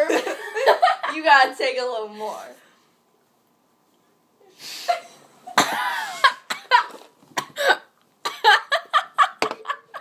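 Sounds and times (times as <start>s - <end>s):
breathy hiss: 4.4s - 5.3s
girl coughing: 5.6s - 6.7s.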